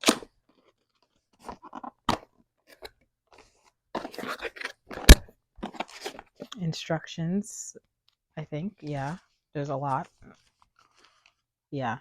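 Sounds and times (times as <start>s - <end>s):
packaging crinkling and rustling: 0.0s - 6.5s, 8.8s - 11.5s.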